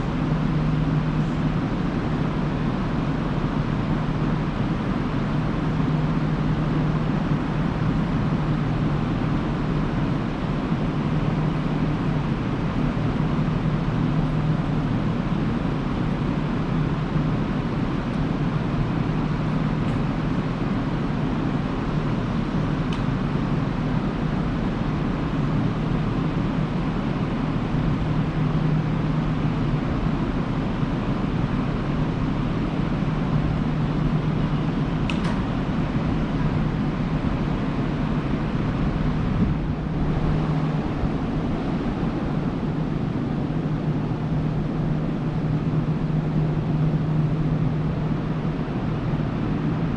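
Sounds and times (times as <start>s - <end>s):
railway station rumble: 0.0s - 49.9s
train electrical machinery humming: 0.0s - 49.9s.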